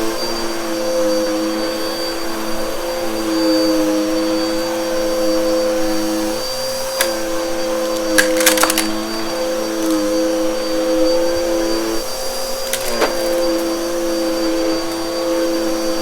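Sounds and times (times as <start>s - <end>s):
vacuum cleaner motor whine: 0.0s - 16.0s
debris cracking in vacuum: 6.9s - 10.6s, 12.6s - 13.8s
debris crackling in vacuum: 7.8s - 10.6s, 12.6s - 13.8s.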